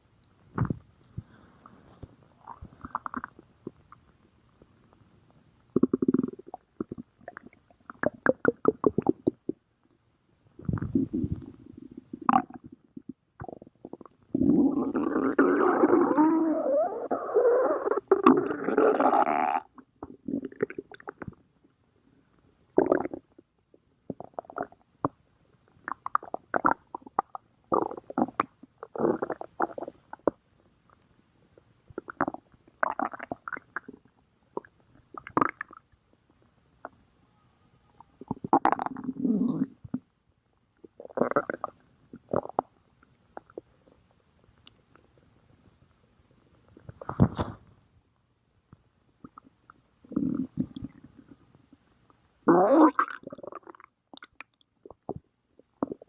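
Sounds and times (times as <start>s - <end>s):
stomach growling: 0.6s - 0.9s, 2.4s - 4.0s, 5.7s - 9.6s, 10.6s - 21.4s, 38.0s - 40.1s, 40.8s - 42.7s, 49.2s - 51.8s, 52.4s - 56.0s.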